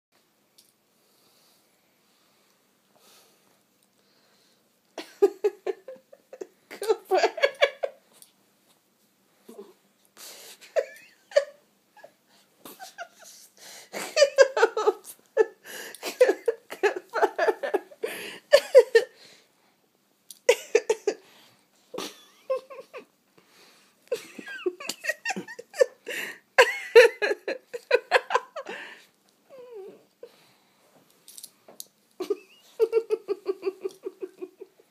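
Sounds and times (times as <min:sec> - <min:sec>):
person giggling and laughing: 0:05.0 - 0:08.0, 0:10.6 - 0:19.2, 0:20.5 - 0:21.2, 0:22.0 - 0:23.1, 0:24.1 - 0:30.3, 0:32.2 - 0:34.9.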